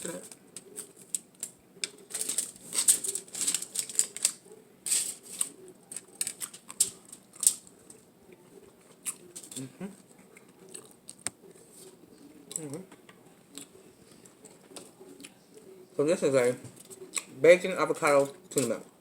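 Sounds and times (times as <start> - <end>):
sandwich crunching: 0.0 - 12.8.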